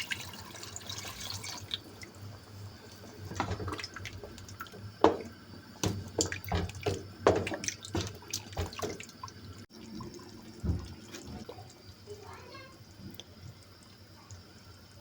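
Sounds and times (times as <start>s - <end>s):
water splashing in a sink: 0.0s - 15.0s
dishes knocking and clattering: 3.3s - 9.2s, 10.6s - 11.5s.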